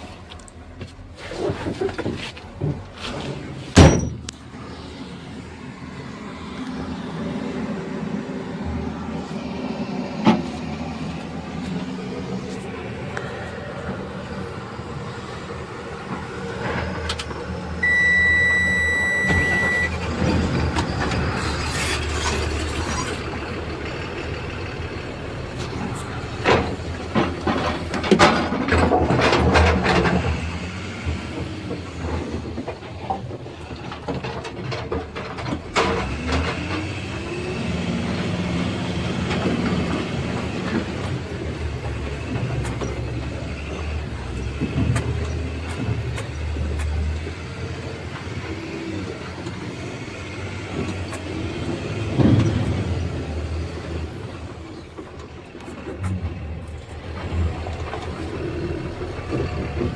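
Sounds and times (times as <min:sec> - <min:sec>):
heavy diesel machinery running: 0:00.0 - 0:59.9.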